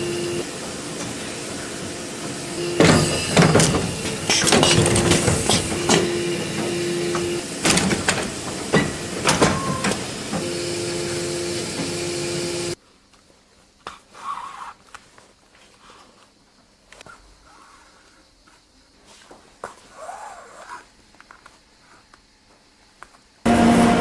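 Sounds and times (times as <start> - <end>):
steady hum: 0.0 - 12.8, 23.5 - 24.0
motor-driven machine scraping and knocking: 2.3 - 12.8
faint handling sounds: 12.8 - 23.3.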